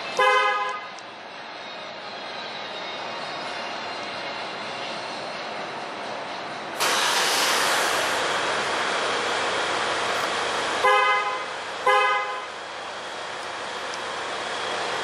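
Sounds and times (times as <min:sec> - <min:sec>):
car horn toots: 0:00.2 - 0:01.0, 0:10.8 - 0:12.5.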